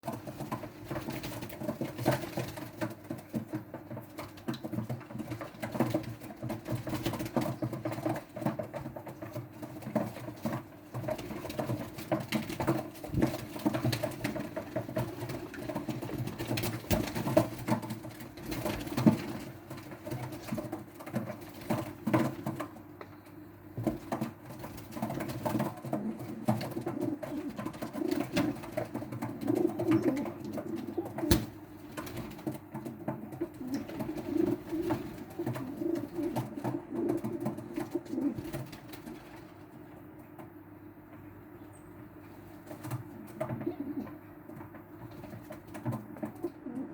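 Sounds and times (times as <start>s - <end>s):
birds clicking tapping and fluttering: 0.0s - 41.2s, 42.0s - 46.9s
pigeons cooing: 24.9s - 39.5s, 42.8s - 46.9s.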